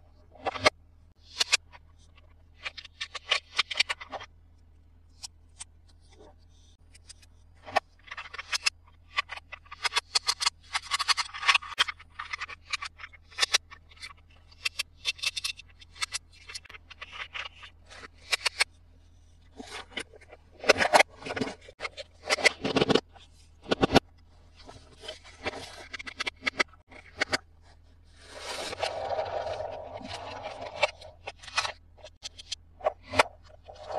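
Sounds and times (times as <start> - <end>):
plastic toys clicking and tapping: 0.4 - 4.3, 6.9 - 18.7, 19.6 - 27.4.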